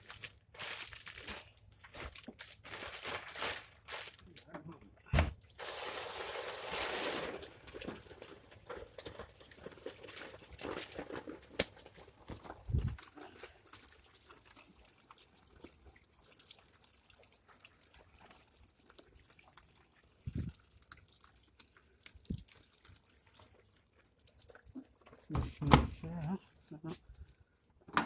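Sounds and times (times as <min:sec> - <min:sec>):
water trickling and dripping: 0:12.7 - 0:25.3.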